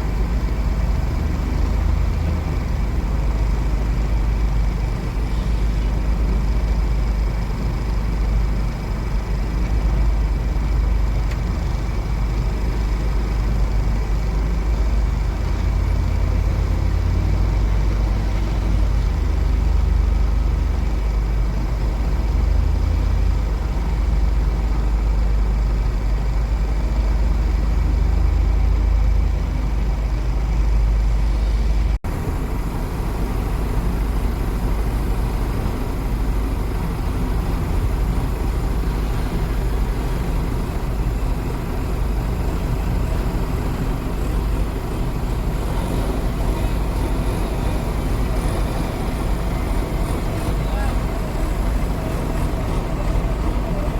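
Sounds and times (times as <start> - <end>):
diesel engine rumbling: 0.0 - 53.9.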